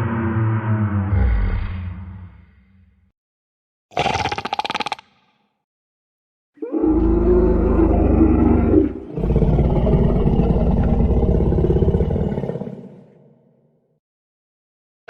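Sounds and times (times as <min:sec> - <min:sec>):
dinosaur roar: 0:00.0 - 0:02.4, 0:06.6 - 0:13.2.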